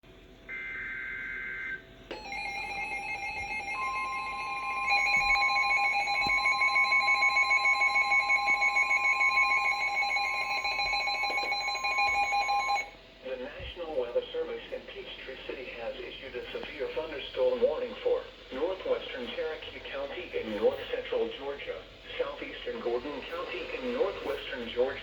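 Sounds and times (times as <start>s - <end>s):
alternating high data tones: 0.5s - 13.0s.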